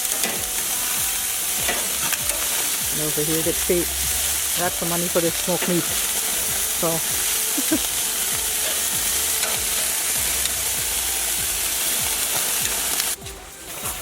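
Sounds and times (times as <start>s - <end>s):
meat sizzling on a grill: 0.0s - 14.0s.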